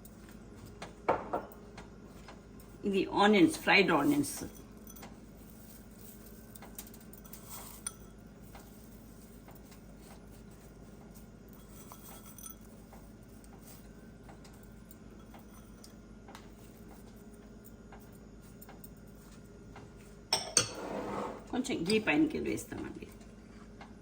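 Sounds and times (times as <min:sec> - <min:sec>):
low steady hum: 0:00.0 - 0:24.0
utensils clinking against pot: 0:11.5 - 0:12.8, 0:20.3 - 0:22.3.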